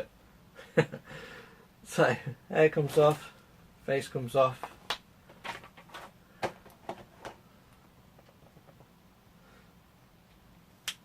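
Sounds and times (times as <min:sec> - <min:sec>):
plastic parts clicking and tapping: 0:04.6 - 0:07.4.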